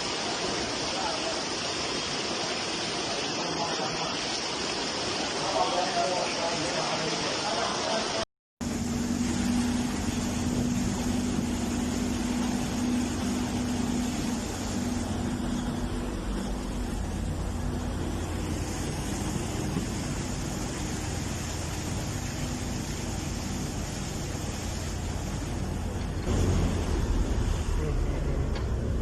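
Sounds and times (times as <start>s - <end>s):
vehicle engine running: 8.6s - 29.0s.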